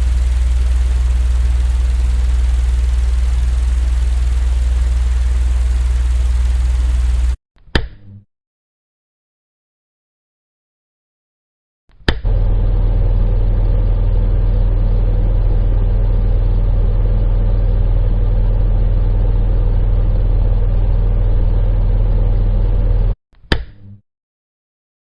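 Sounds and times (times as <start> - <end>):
electric fan motor hum: 0.0 - 7.4, 12.2 - 23.2.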